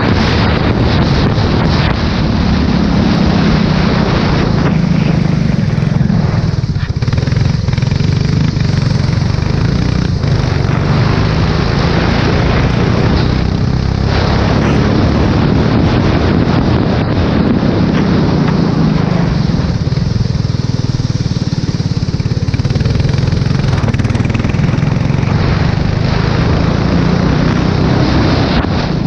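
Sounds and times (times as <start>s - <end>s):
race car engine at speed: 0.0s - 29.0s
wind rushing over microphone: 0.0s - 29.0s.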